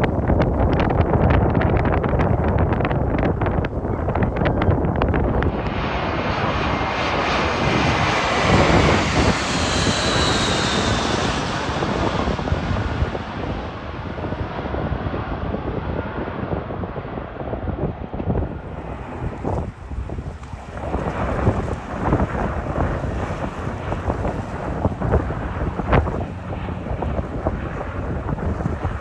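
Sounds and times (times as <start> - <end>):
jet airliner passing overhead: 0.0 - 29.0
wind buffeting microphone: 0.0 - 29.0.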